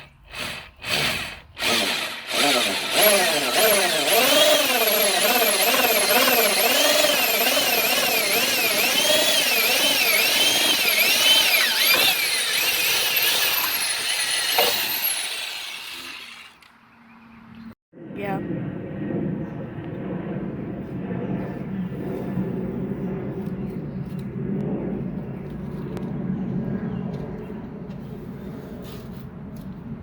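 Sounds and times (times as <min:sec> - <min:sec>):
power drill whining: 0:00.0 - 0:16.7.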